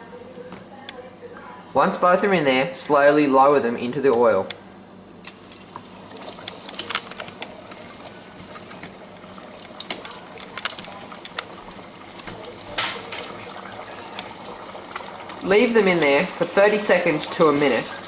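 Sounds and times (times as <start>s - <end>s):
hot oil sizzling and popping: 5.2s - 18.0s.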